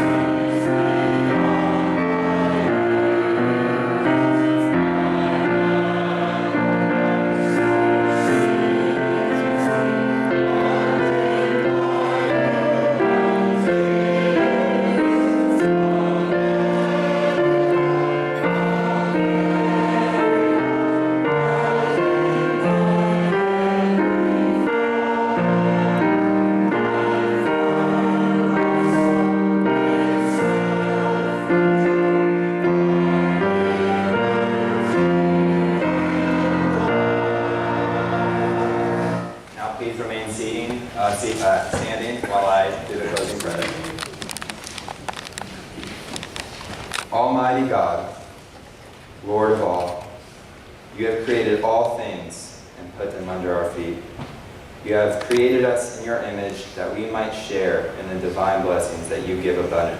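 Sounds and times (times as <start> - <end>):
instrumental accompaniment: 0.0 - 47.1
congregation singing a hymn: 0.0 - 48.3, 49.2 - 59.9.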